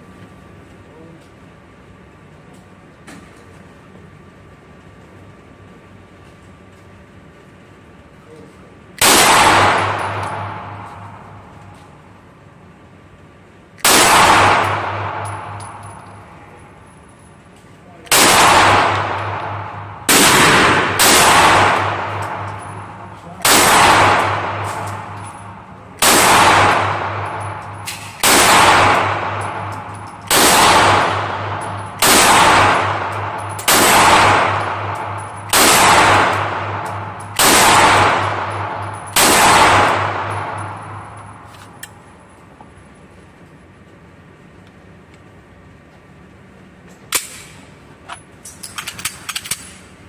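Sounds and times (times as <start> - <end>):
pistol shots with echo: 9.0 - 11.8, 13.8 - 16.4, 18.0 - 41.5.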